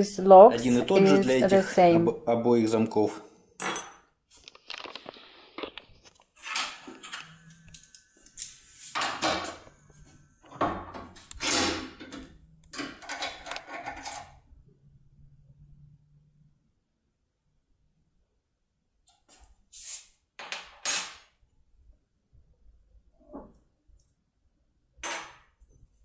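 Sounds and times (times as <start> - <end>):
metal parts clicking and knocking: 10.6 - 14.3
faint low hum: 14.4 - 18.8.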